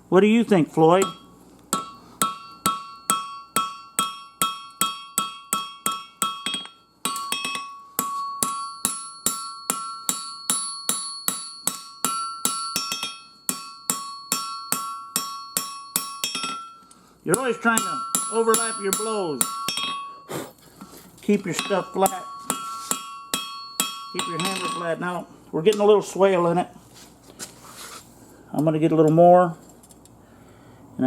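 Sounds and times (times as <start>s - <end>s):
hammer striking metal on anvil: 1.0s - 20.3s, 21.3s - 25.9s.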